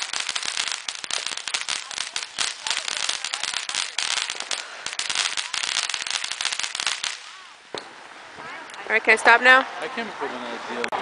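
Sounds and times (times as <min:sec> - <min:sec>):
fireworks crackling: 0:00.0 - 0:09.9.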